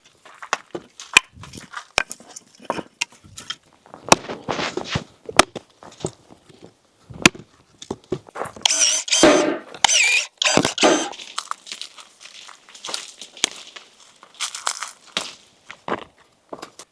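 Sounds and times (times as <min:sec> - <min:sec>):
rustling noise: 0:00.2 - 0:08.6, 0:11.1 - 0:16.9
sharp knocks and clicks: 0:08.6 - 0:11.2.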